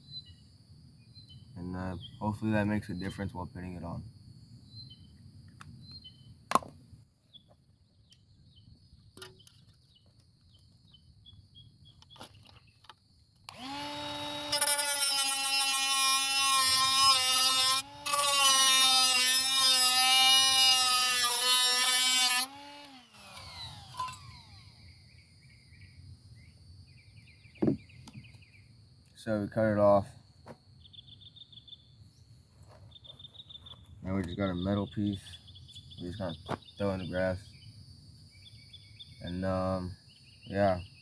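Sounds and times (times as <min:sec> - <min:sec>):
power tool cutting metal can: 0:13.5 - 0:24.8.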